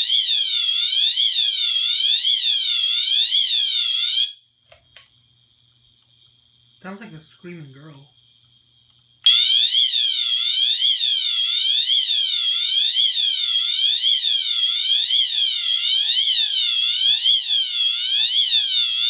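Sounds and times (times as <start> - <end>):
fire alarm sweeping tone: 0.0 - 4.4, 9.2 - 19.0.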